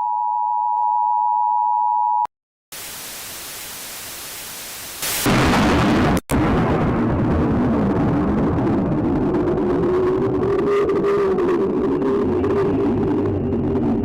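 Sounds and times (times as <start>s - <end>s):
loud static hiss: 2.7s - 6.2s.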